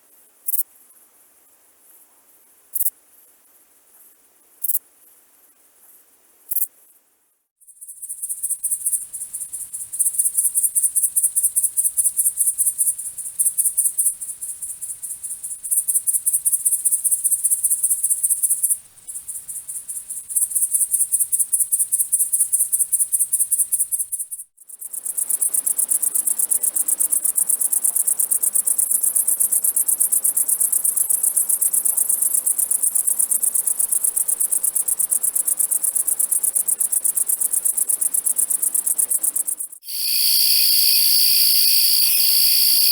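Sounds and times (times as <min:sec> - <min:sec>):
insects trilling: 0:35.5 - 0:42.9.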